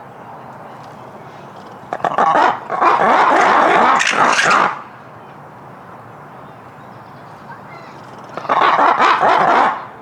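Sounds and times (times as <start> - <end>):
lemurs shrieking and wailing: 2.1 - 4.8.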